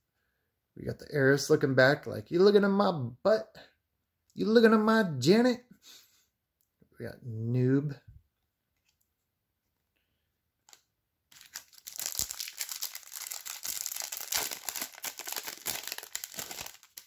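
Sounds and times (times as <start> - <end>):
foil wrapper crinkling and tearing: 10.7 - 17.0.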